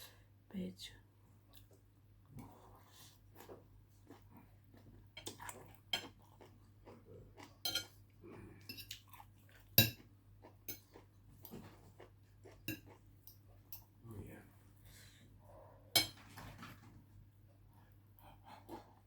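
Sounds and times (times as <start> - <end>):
chewing: 1.5 - 13.8
cutlery clinking on a dish: 7.6 - 8.0, 9.8 - 10.0, 10.7 - 10.9, 16.0 - 16.4.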